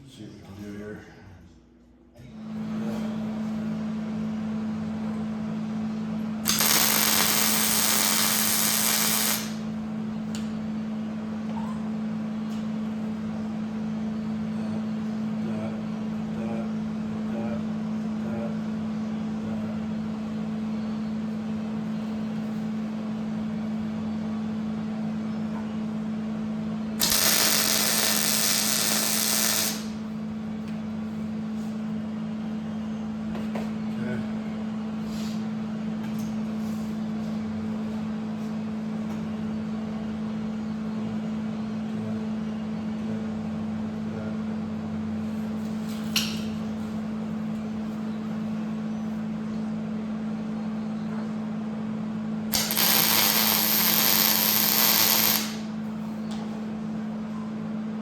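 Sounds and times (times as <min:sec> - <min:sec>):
steady machine hum: 0:00.0 - 0:58.0
power tool working metal: 0:06.5 - 0:09.7, 0:27.0 - 0:30.0, 0:52.5 - 0:55.6.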